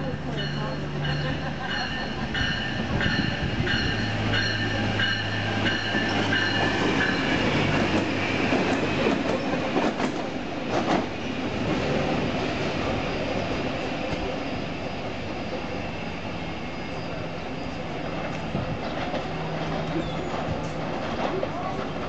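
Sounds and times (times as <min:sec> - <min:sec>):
train wheels clicking over rail joints: 0:18.0 - 0:22.0.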